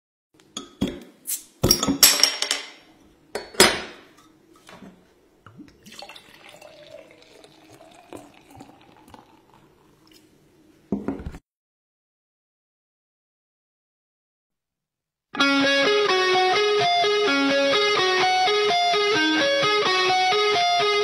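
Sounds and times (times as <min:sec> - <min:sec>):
liquid pouring and fizzing: 0:05.5 - 0:10.3
glass clinking: 0:05.8 - 0:09.6.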